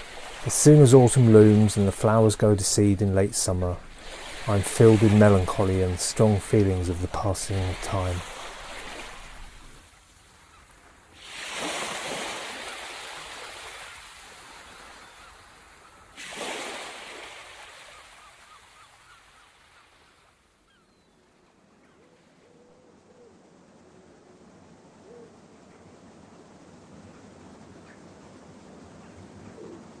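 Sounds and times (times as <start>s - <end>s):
waves breaking on shore: 0.0s - 20.4s.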